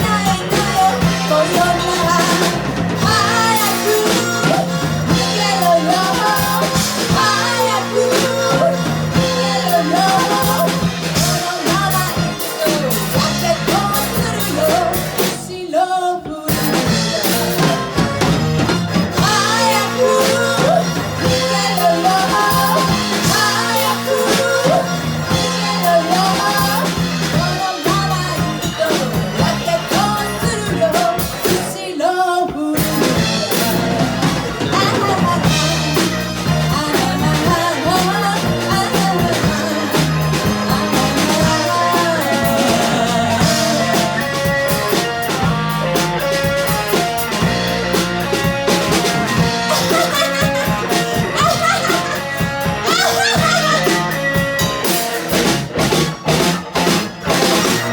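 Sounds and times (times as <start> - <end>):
person singing: 0.0 - 18.0, 19.2 - 47.5, 48.3 - 55.2
live band playing pop song: 0.0 - 57.9.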